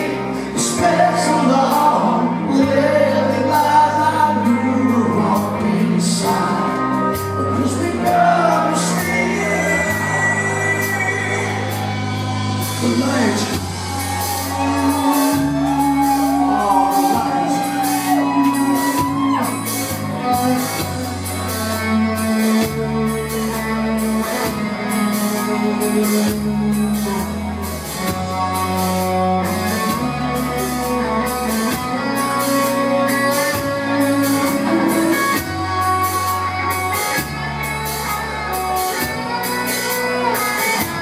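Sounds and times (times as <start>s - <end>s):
person singing: 0.0s - 27.3s
live rock band playing: 0.0s - 41.0s.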